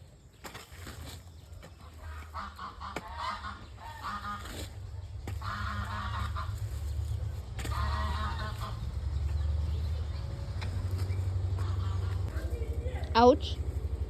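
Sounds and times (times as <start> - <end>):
geese calling: 1.7 - 9.8, 10.5 - 13.3
low rumble: 4.8 - 14.0.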